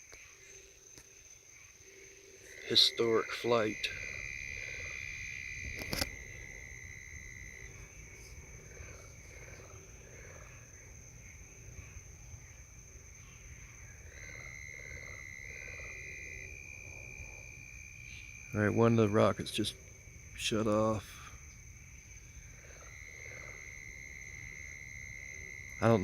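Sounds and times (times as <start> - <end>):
crickets chirring: 0.0 - 26.0.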